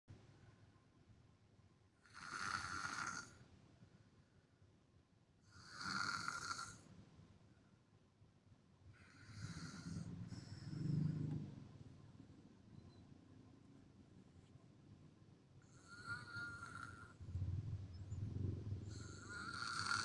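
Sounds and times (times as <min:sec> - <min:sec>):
person snoring: 0:02.0 - 0:03.4, 0:05.5 - 0:06.9, 0:09.0 - 0:11.4, 0:15.7 - 0:17.2, 0:18.8 - 0:20.0.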